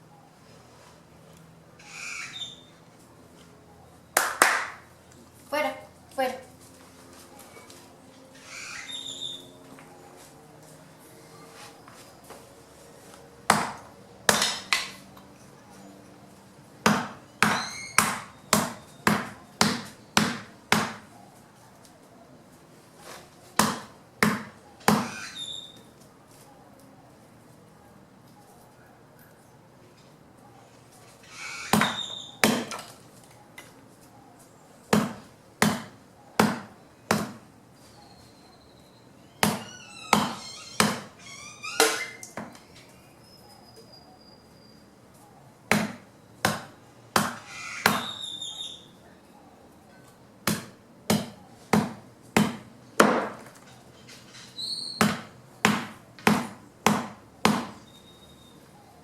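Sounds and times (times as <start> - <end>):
blade chopping wood: 13.5 - 14.9, 16.8 - 21.0, 23.6 - 25.1, 31.7 - 32.9, 34.9 - 37.4, 45.7 - 48.1, 50.4 - 53.5, 55.0 - 57.8.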